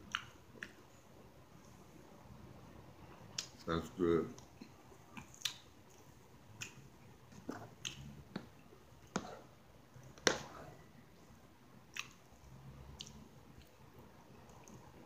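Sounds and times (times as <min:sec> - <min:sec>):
sharp wet clicks: 0:00.1 - 0:00.8, 0:05.1 - 0:06.8, 0:11.9 - 0:12.2
close-up chewing: 0:04.6 - 0:08.2, 0:11.9 - 0:12.4.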